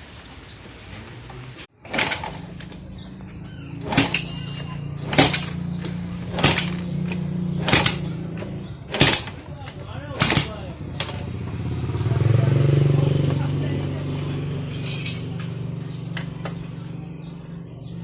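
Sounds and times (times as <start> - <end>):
sharp metallic knocks: 3.8 - 9.5, 10.1 - 11.2.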